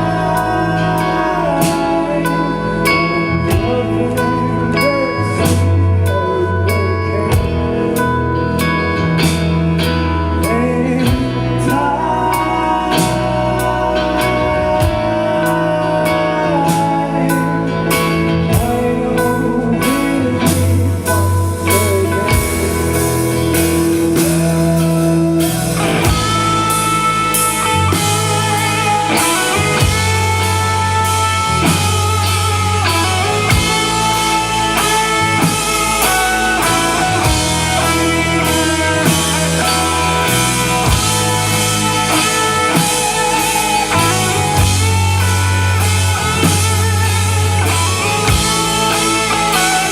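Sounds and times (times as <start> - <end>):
bass: 0.0 - 49.9
guitar holding notes: 0.0 - 49.9
steady drum beat: 20.5 - 49.9.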